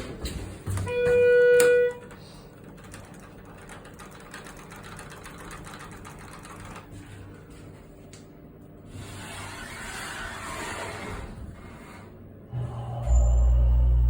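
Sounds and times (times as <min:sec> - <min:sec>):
steady hum: 0:00.0 - 0:14.0
elevator signal beep: 0:00.8 - 0:02.1, 0:12.8 - 0:14.0.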